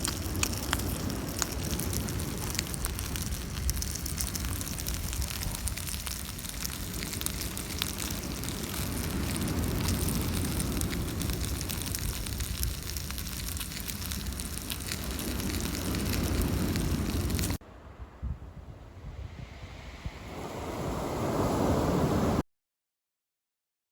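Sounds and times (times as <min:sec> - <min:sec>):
campfire crackling and popping: 0:00.0 - 0:17.6.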